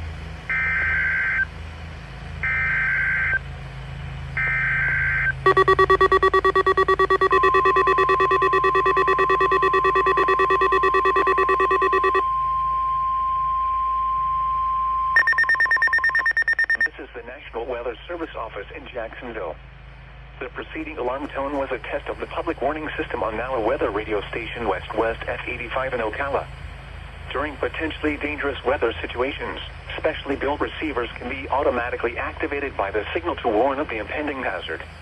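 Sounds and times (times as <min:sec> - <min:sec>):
rapidly pulsing alarm beep: 0:04.4 - 0:16.9
steady warning alarm tone: 0:04.4 - 0:16.9
digital data bursts: 0:05.5 - 0:12.2, 0:15.2 - 0:16.9.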